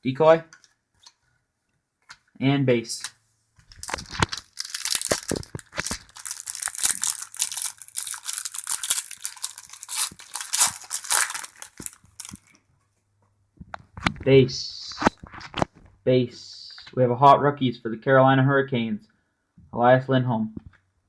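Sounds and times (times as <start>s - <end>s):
cards being handled: 3.0s - 12.6s
plastic wrapper tearing and crinkling: 3.6s - 12.6s.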